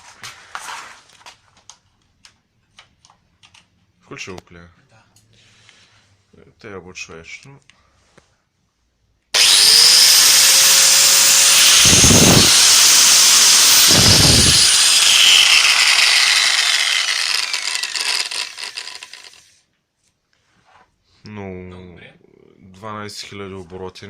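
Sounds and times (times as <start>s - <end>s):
angle grinder motor whine: 9.4s - 19.5s.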